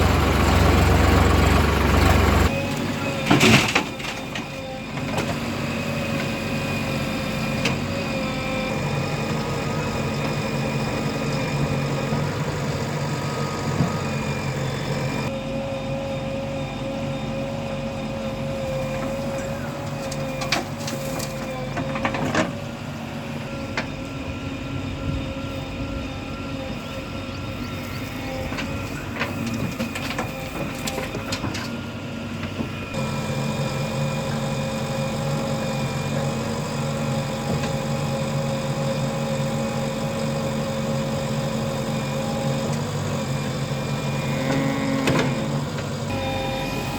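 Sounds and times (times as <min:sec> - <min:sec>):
steady machine whine: 0:00.0 - 0:04.6, 0:32.5 - 0:46.9
diesel engine running under load: 0:00.0 - 0:46.9.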